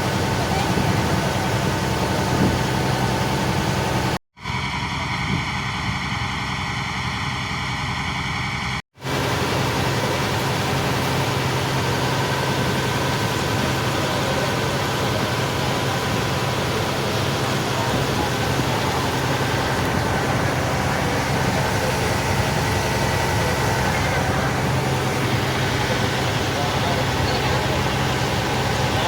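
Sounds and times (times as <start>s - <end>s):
engine drone: 0.0s - 29.0s
dense rushing noise: 8.2s - 29.0s.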